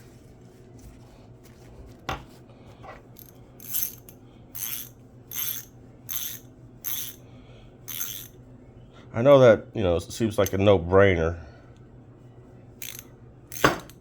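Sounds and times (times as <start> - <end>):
ratchet pawl clicking: 3.2 - 7.2, 7.9 - 8.3, 12.8 - 14.0.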